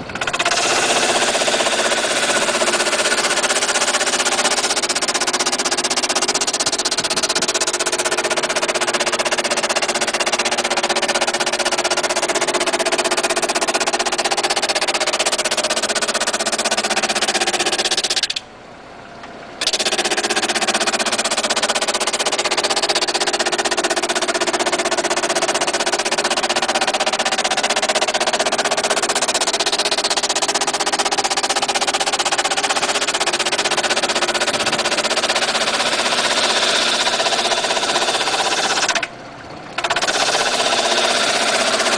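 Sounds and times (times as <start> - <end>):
power sander on wood: 0.4 - 4.7.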